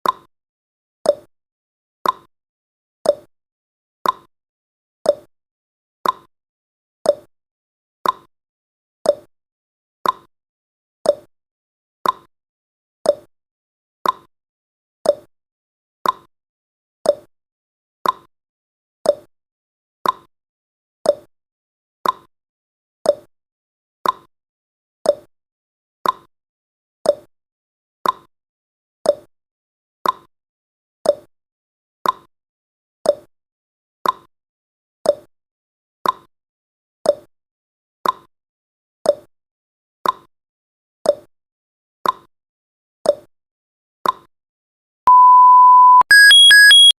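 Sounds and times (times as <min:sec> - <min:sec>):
timer ticking: 0:45.1 - 0:46.9
electronic alarm beep: 0:45.1 - 0:47.0
steady beep: 0:45.1 - 0:47.0.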